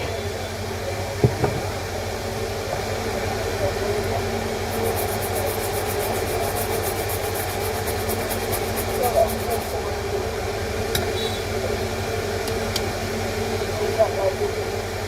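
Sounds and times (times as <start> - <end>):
low mechanical hum: 0.0 - 15.0
single knock: 1.2 - 1.7.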